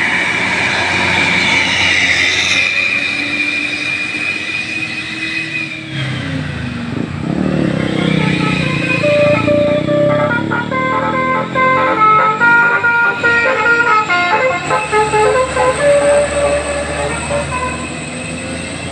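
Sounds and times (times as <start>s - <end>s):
bus passing: 0.0s - 18.9s
high bus horn note: 8.0s - 18.2s
musical horn notes: 8.1s - 17.9s.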